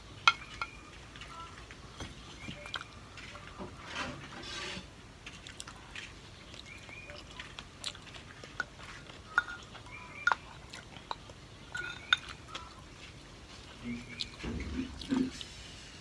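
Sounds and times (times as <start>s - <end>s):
person chewing: 5.2s - 15.8s
utensils clicking against dishes: 8.5s - 10.4s, 11.0s - 12.7s.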